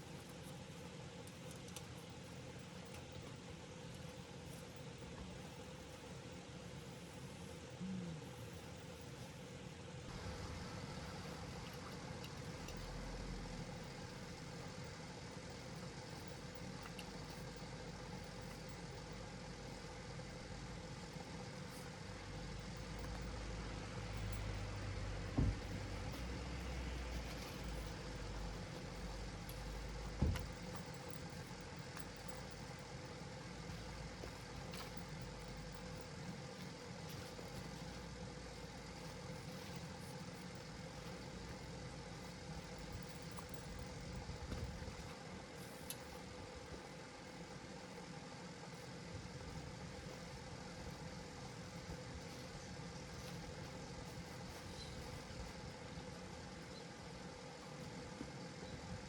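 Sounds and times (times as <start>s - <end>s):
vehicle engine idling: 10.0s - 46.2s.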